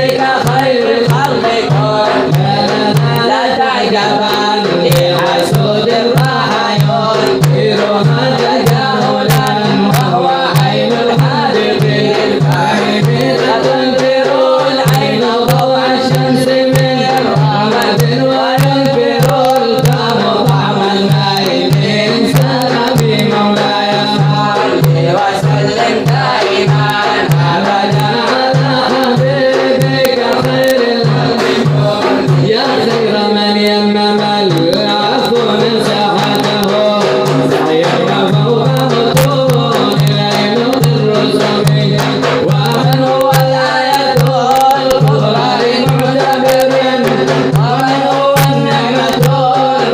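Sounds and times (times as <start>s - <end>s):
hand drum beat: 0.0s - 49.9s.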